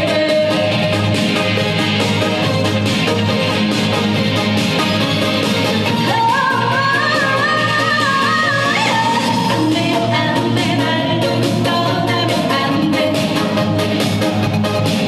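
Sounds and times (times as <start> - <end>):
pop backing track: 0.0 - 15.0
person singing: 5.9 - 13.8.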